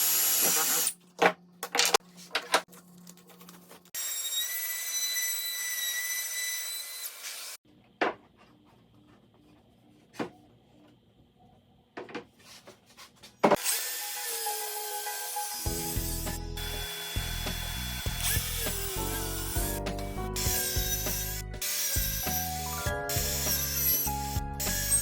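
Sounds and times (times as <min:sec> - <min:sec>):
power tool cutting wood: 0:00.0 - 0:01.0, 0:04.0 - 0:07.6, 0:13.6 - 0:25.0.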